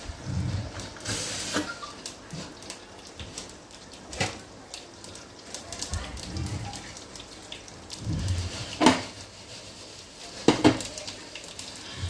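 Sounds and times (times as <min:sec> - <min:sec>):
kitchen utensils knocking and clinking: 0:10.4 - 0:10.9.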